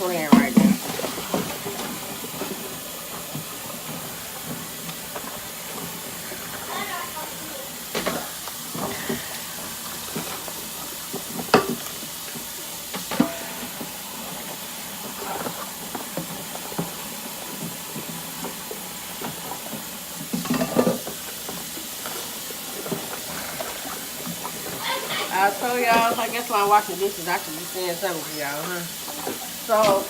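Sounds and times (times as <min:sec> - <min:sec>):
tap running into a sink: 0:07.8 - 0:24.8
dishes and pots clinking: 0:07.9 - 0:14.4, 0:20.3 - 0:26.9, 0:28.2 - 0:30.0.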